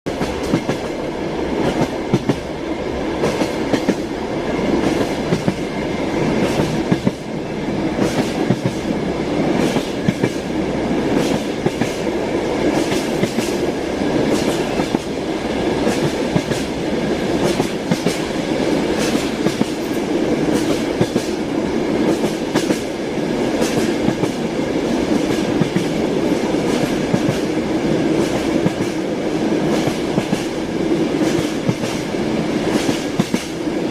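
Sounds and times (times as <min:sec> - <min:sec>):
train wheels clattering over rail joints: 0:11.1 - 0:15.2, 0:18.9 - 0:21.4, 0:23.5 - 0:24.4, 0:32.7 - 0:33.6.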